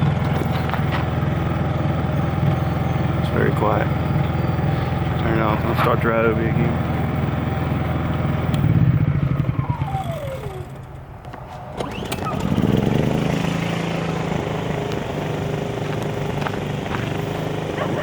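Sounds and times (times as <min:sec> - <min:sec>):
generator engine winding down: 0:00.0 - 0:18.0
generator running steadily: 0:00.0 - 0:18.0
generator pull-start: 0:09.6 - 0:13.0.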